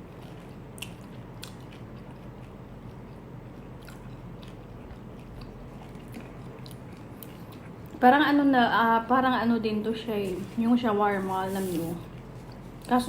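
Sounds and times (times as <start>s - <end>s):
person chewing crunchy taco: 0.0s - 8.0s.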